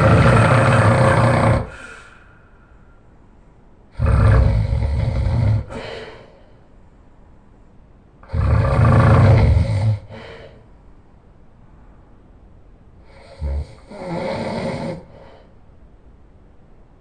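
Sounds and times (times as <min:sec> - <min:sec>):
man snoring loudly: 0:00.0 - 0:02.0, 0:03.9 - 0:05.9, 0:08.2 - 0:10.2, 0:13.1 - 0:15.1
quiet breathing: 0:00.0 - 0:12.1, 0:13.0 - 0:16.0.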